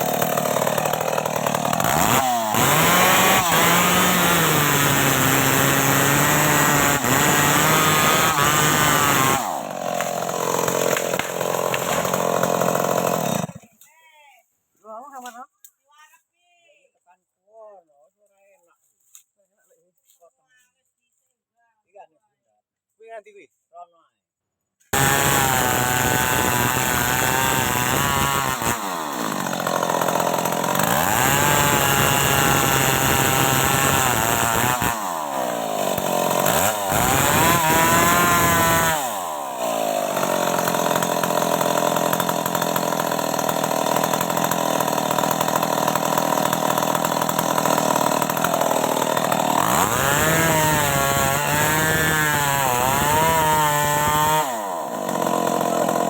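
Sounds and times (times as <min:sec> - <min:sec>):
chainsaw cutting wood: 0:00.0 - 0:13.8, 0:24.9 - 0:56.0.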